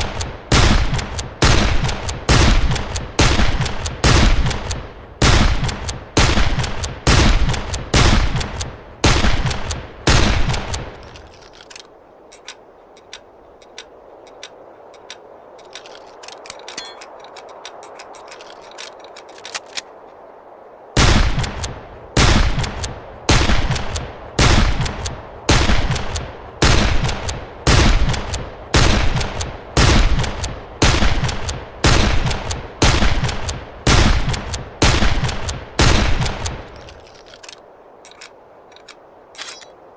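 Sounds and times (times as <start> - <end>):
faint clicks: 0.0 - 4.9, 5.6 - 6.0, 10.5 - 20.2, 21.4 - 21.8, 23.7 - 25.2, 27.0 - 28.5, 29.1 - 31.6, 33.2 - 35.6, 36.2 - 39.8.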